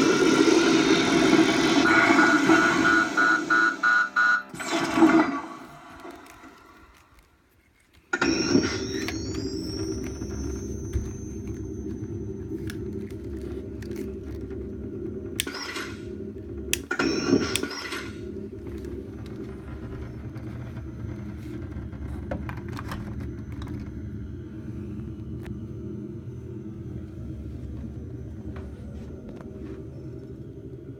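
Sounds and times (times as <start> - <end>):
electronic low hum: 8.2 - 30.9.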